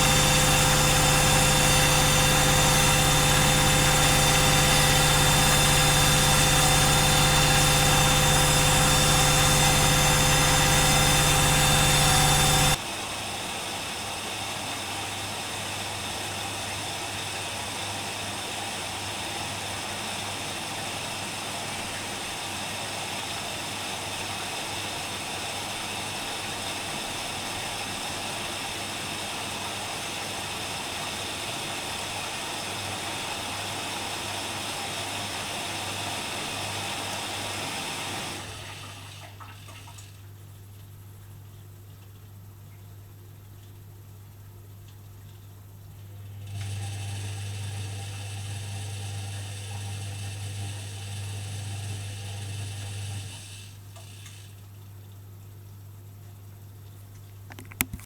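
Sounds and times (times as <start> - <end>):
low hum: 0.0 - 12.8
washing machine motor whine: 0.0 - 13.0, 35.6 - 41.1, 45.9 - 54.6
water rushing through machine: 0.0 - 13.0.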